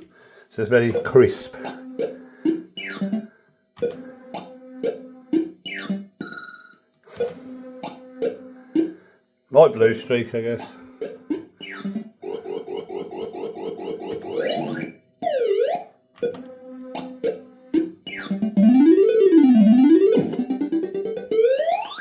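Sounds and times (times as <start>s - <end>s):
fruit machine beeps: 0.9s - 4.1s, 11.0s - 16.6s.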